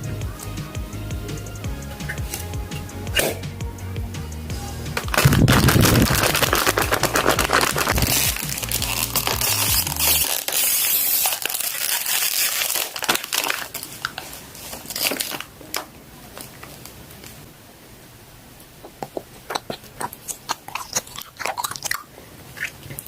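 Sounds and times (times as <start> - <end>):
background music with bass line: 0.0 - 10.3
packaging crinkling and rustling: 5.0 - 17.4.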